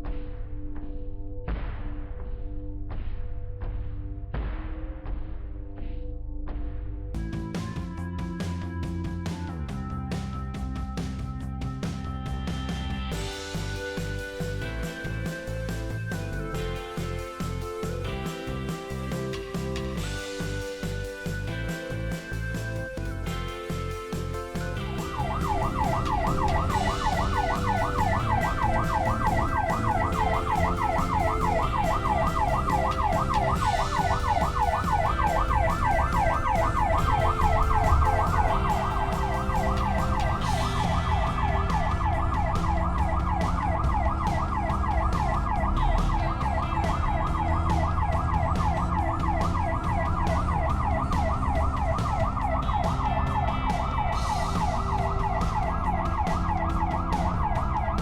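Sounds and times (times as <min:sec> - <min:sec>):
low vehicle rumble: 0:19.3 - 0:58.0
siren rapid warble: 0:23.6 - 0:58.0.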